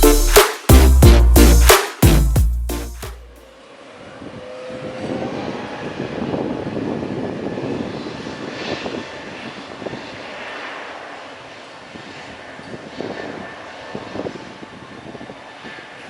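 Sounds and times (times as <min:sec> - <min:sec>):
jet engines passing by: 0:03.6 - 0:16.0.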